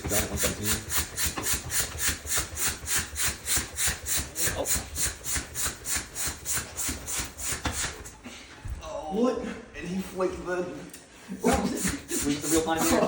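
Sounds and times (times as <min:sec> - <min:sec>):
bicycle pump hissing strokes: 0:00.0 - 0:08.2, 0:11.4 - 0:13.0.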